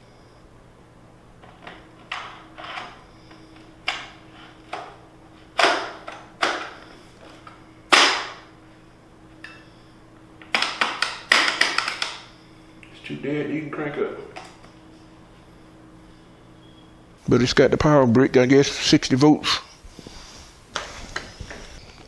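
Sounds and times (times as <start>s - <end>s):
hard objects clacking and knocking: 10.4s - 12.2s.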